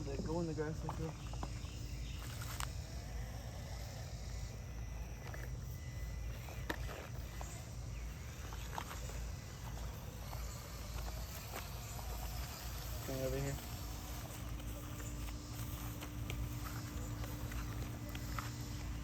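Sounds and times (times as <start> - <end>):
insects chirping faintly: 0.0 - 19.0
rustling through grass: 6.6 - 19.0.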